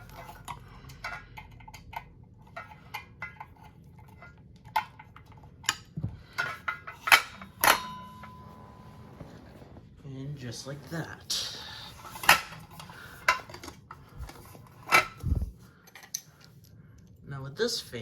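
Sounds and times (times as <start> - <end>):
metal clanks: 0.0 - 9.4.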